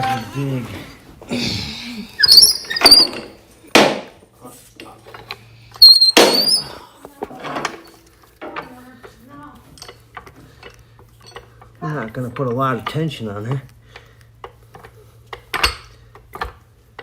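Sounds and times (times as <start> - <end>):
metal tools clanking: 5.1 - 8.7, 9.7 - 13.0.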